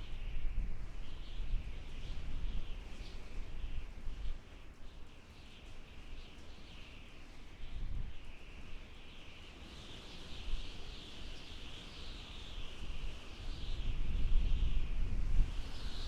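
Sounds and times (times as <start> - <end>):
wind howling in gusts: 10.0 - 16.0.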